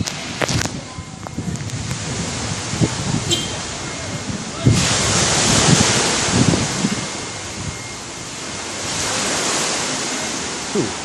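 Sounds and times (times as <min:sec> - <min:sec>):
sea waves washing in: 0:00.0 - 0:11.0
wind on microphone: 0:00.0 - 0:11.0.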